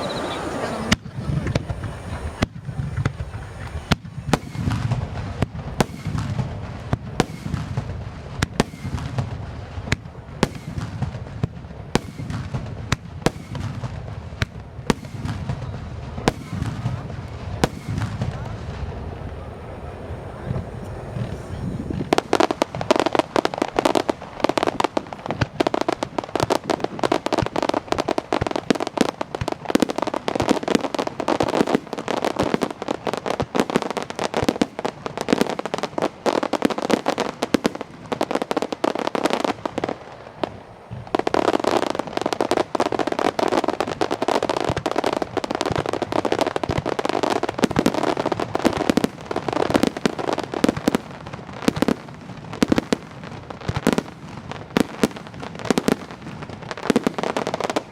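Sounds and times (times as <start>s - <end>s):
fireworks bursts and crackles: 0.0s - 57.9s.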